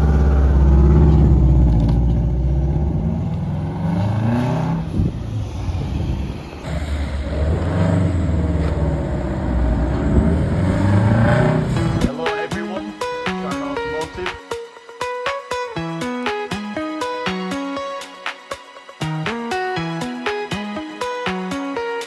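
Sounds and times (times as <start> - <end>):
car engine revving with gear changes: 0.0 - 12.1.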